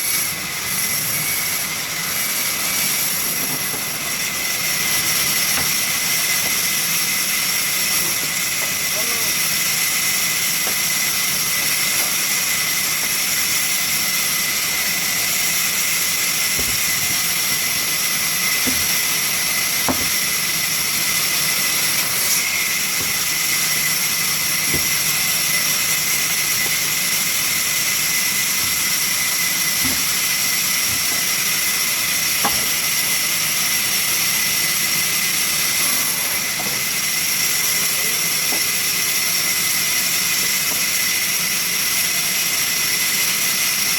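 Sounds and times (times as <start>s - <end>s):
sawmill machinery whine: 0.0s - 43.9s
machinery hum: 14.4s - 33.9s.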